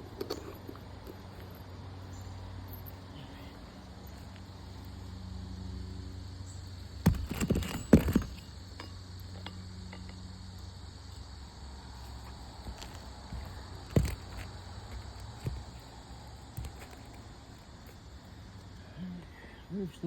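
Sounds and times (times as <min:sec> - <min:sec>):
roofing tools knocking and clattering: 0:07.0 - 0:10.2, 0:12.7 - 0:15.8.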